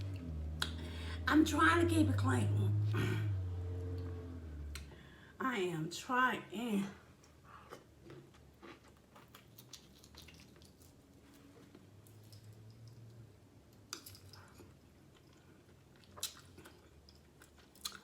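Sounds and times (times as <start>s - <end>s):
quiet chewing: 7.2s - 13.1s, 13.8s - 18.0s.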